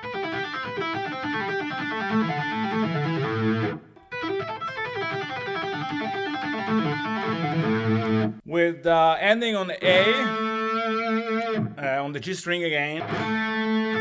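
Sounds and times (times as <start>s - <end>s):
electric guitar tapped run: 13.0s - 14.0s.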